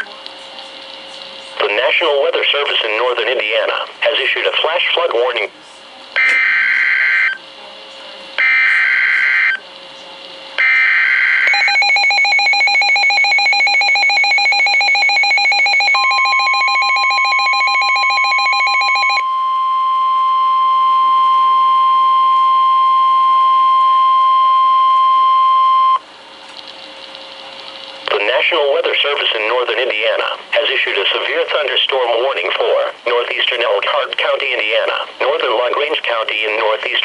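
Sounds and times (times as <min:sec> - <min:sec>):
pulsing electronic alert alarm: 0:06.2 - 0:07.4, 0:08.4 - 0:09.6, 0:10.6 - 0:26.0
steady warning tone: 0:08.4 - 0:09.7, 0:10.6 - 0:26.1.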